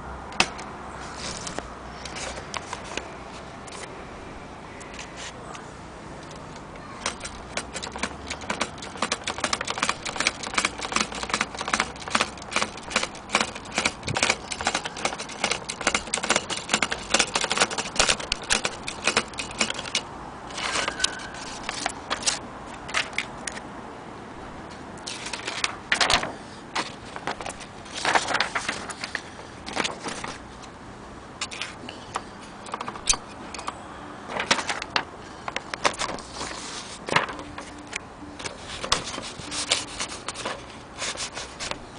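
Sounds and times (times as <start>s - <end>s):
typewriter keys striking: 7.0s - 23.3s, 35.8s - 36.2s.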